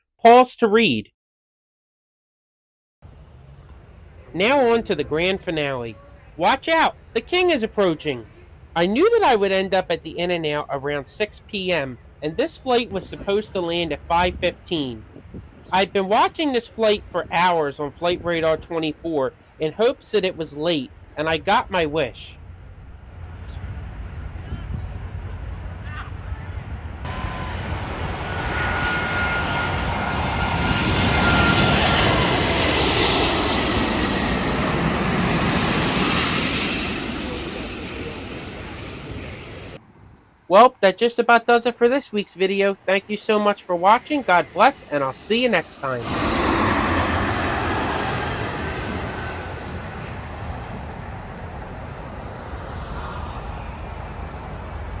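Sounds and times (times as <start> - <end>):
jet airliner passing overhead: 3.1 - 40.3, 42.3 - 55.0
high engine whine: 26.7 - 40.5, 44.0 - 55.0
steady low hum: 44.0 - 55.0.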